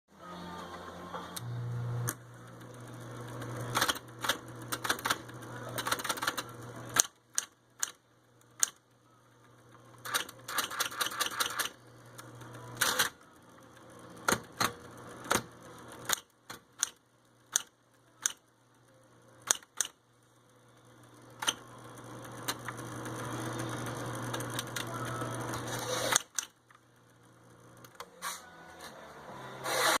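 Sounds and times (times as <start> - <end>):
electric typewriter motor hum: 0.3 - 28.4
typewriter keys clacking: 5.8 - 7.1, 10.1 - 11.7.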